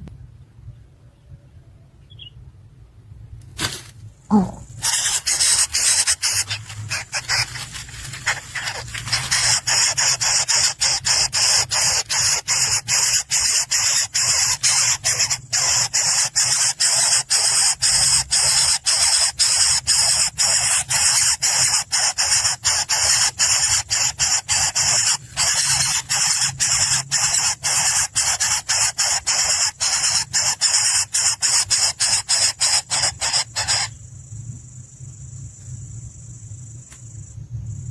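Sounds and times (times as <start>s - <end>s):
nestlings begging: 4.3s - 34.2s.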